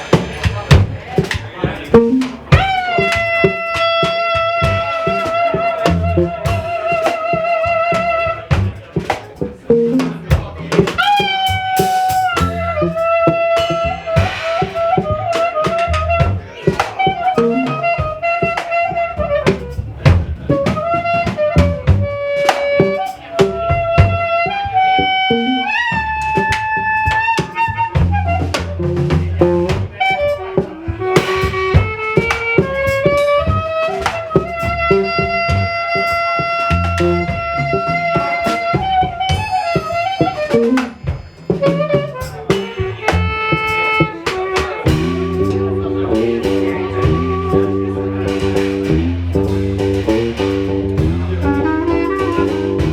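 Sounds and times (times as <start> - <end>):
bass notes: 0.0 - 52.9
drum hits: 0.0 - 52.9
sliding melody line: 2.0 - 3.6, 9.6 - 16.3, 17.1 - 18.4, 25.1 - 26.0, 36.6 - 52.9.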